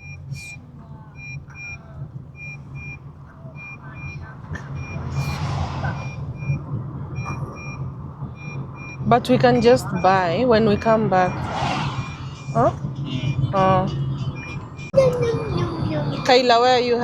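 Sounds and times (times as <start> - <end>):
car warning beeps: 0.0 - 17.0
engine humming: 0.0 - 17.0
rushing noise: 4.0 - 9.0, 10.2 - 13.4.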